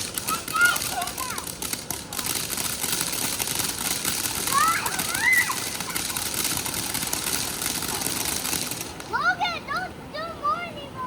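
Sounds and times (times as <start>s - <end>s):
fireworks crackling: 0.0s - 9.8s
child calling: 0.2s - 1.5s, 4.5s - 6.2s.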